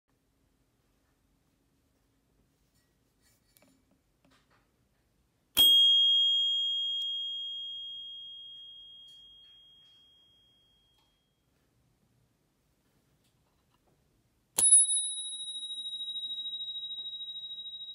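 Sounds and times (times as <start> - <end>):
bicycle bell ringing: 5.6 - 11.4, 14.6 - 17.9.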